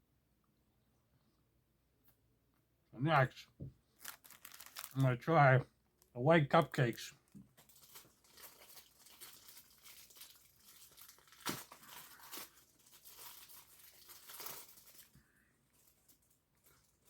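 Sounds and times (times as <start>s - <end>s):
plastic wrapper crinkling: 3.9s - 5.2s, 6.8s - 17.0s.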